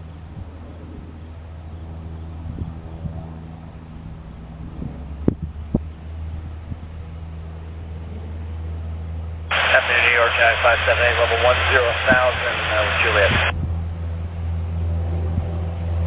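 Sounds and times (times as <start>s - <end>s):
low steady hum: 9.5s - 13.5s.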